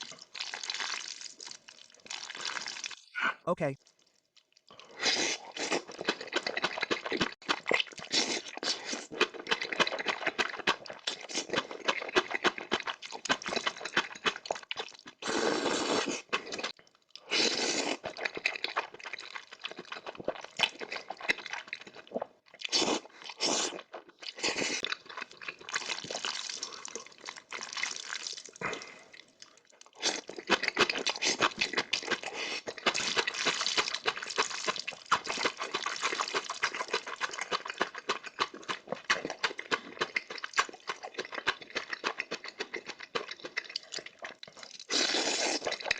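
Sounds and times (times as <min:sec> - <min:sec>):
person slurping and chewing noodles: 0:00.0 - 0:45.9.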